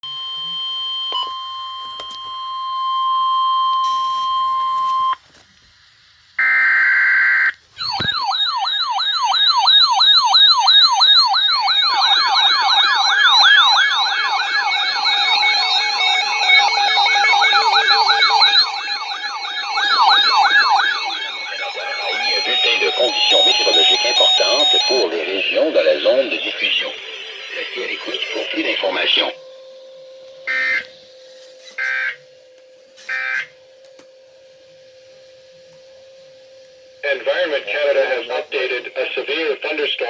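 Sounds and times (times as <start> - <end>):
electronic siren-like attention signal: 7.8 - 39.4
steady high alert tone: 7.8 - 39.6
buzzing data burst: 8.8 - 39.8.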